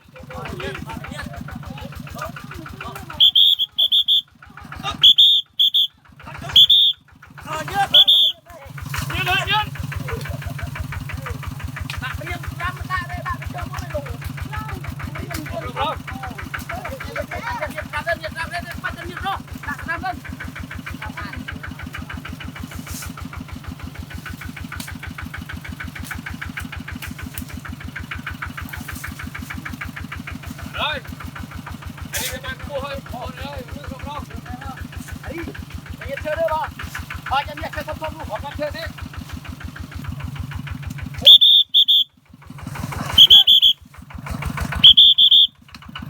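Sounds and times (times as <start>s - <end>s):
farm machine engine chugging: 0.0s - 46.0s
shrill whistle blasts: 3.1s - 4.4s, 5.0s - 7.1s, 7.9s - 8.5s, 41.2s - 42.2s, 43.0s - 43.9s, 44.8s - 45.6s.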